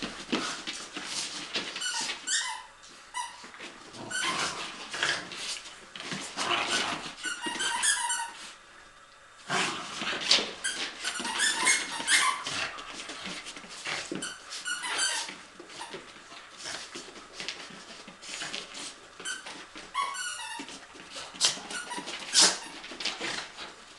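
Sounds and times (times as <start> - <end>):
dogs scuffling and knocking: 0.0 - 2.4, 3.4 - 8.1, 9.6 - 23.9
dog squeaky whines: 1.8 - 3.4, 6.6 - 8.4, 10.7 - 12.6, 14.2 - 16.0, 19.3 - 20.8.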